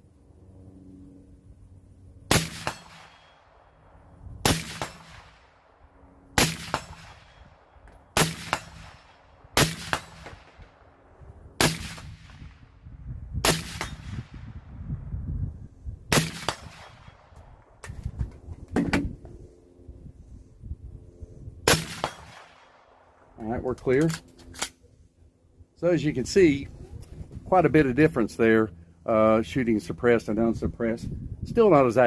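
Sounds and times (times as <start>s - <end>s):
suppressed rifle shots: 2.3s - 3.6s, 4.4s - 5.6s, 6.4s - 10.9s, 11.6s - 12.6s, 13.4s - 14.5s, 16.1s - 17.4s, 21.7s - 23.2s.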